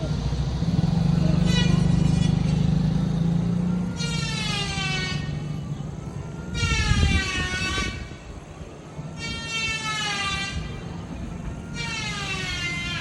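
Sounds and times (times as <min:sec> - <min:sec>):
vehicle engine rumbling: 0:00.0 - 0:13.0
high horn-like blasts: 0:01.3 - 0:03.0, 0:03.7 - 0:05.6, 0:06.4 - 0:08.3, 0:09.2 - 0:13.0.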